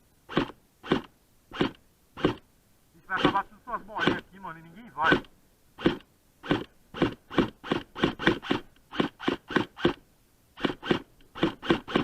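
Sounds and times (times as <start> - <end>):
airsoft gun shots: 0.3 - 2.4, 3.2 - 4.2, 5.1 - 10.0, 10.6 - 12.0.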